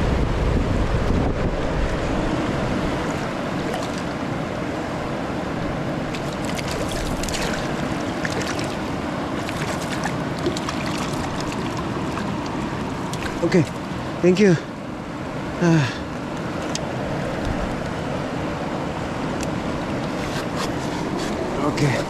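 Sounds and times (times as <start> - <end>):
river flowing over rocks: 2.2 - 17.4.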